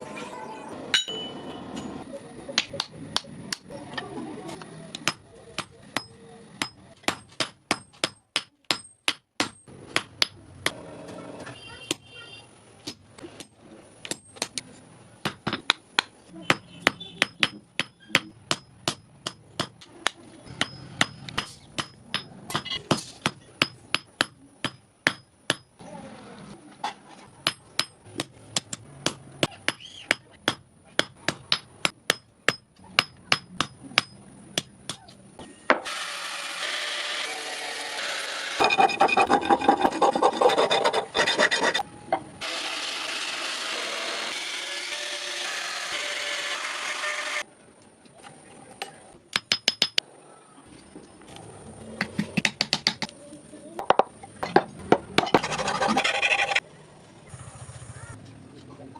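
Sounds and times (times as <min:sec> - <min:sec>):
hammer striking steel on anvil: 0:00.9 - 0:01.9, 0:15.2 - 0:19.8, 0:20.6 - 0:25.7, 0:27.4 - 0:35.0
abrasive rasping on metal: 0:38.6 - 0:41.8, 0:55.2 - 0:56.6.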